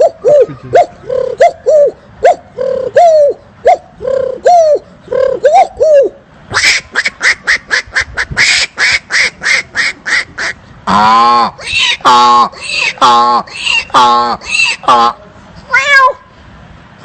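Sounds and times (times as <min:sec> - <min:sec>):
man making birdlike calls: 0:00.0 - 0:15.9
man making raspy bursts: 0:10.8 - 0:15.2.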